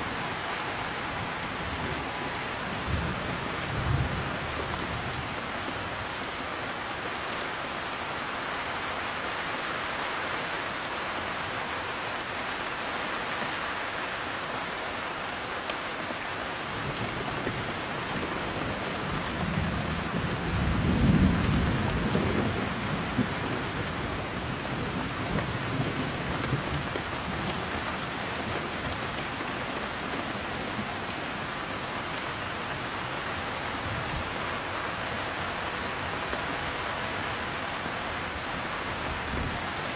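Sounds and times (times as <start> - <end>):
heavy rain: 0.0 - 39.9
thunder rumbling: 18.6 - 29.2.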